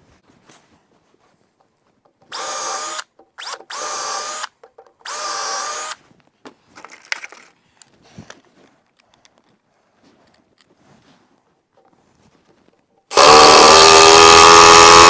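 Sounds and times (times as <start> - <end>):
power drill motor whine: 2.3 - 4.5, 5.1 - 6.0, 13.1 - 15.0.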